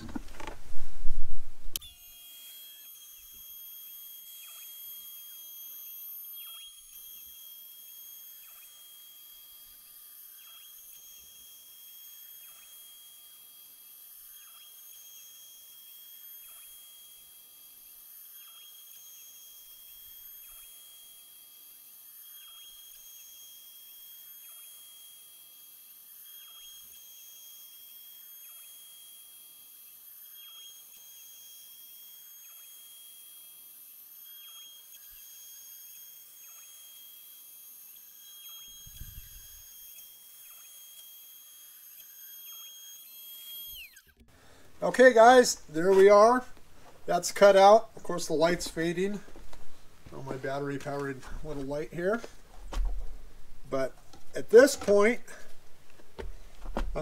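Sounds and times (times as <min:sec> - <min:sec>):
low rumble: 0:00.3 - 0:01.8
router high whine: 0:01.7 - 0:53.1, 0:53.7 - 0:57.0.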